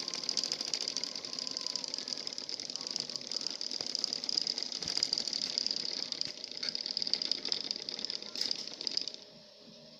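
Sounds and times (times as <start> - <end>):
model engine rattling: 0.0 - 9.2.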